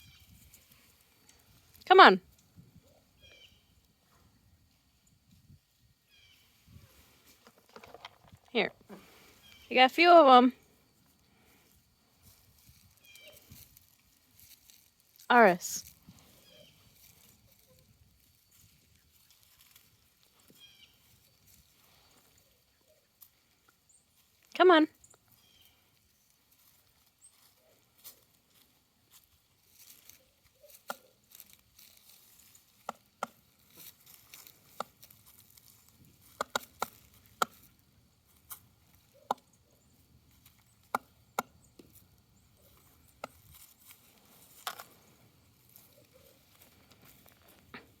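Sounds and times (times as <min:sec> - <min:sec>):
sharp clicks and taps: 0:36.3 - 0:37.6.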